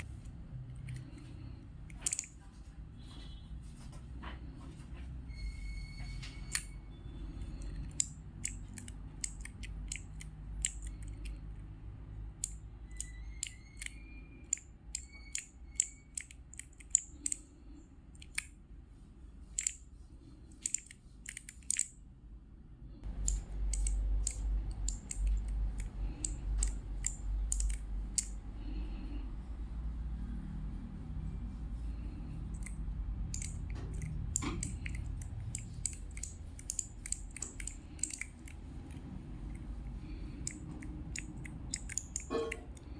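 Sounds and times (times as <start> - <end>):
mechanical key switches clicking: 7.5 - 11.5, 12.3 - 17.5, 18.1 - 18.6, 19.5 - 19.8, 20.5 - 22.0, 23.0 - 28.4, 32.5 - 39.7, 40.3 - 42.9.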